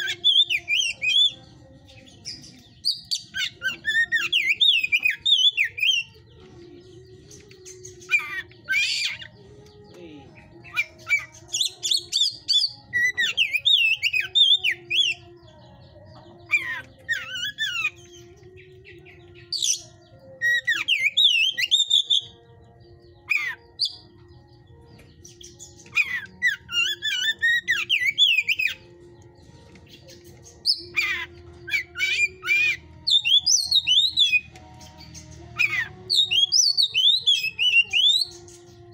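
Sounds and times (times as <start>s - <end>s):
bird singing whistled warbling phrases: 0.0s - 1.4s, 2.4s - 6.1s, 7.8s - 15.2s, 20.4s - 22.4s, 25.3s - 28.9s, 29.9s - 34.5s, 35.6s - 38.6s.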